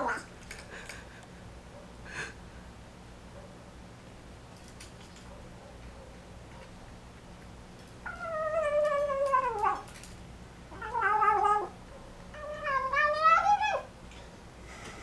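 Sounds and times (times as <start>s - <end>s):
kitten crying: 12.4s - 13.9s.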